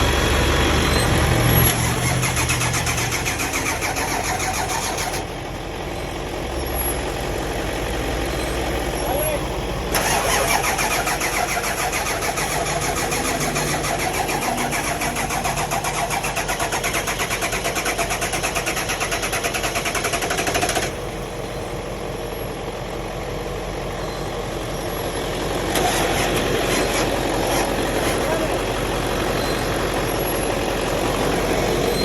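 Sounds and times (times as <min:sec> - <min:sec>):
engine cranking on starter: 0:00.0 - 0:05.5, 0:09.9 - 0:21.1, 0:25.6 - 0:32.0.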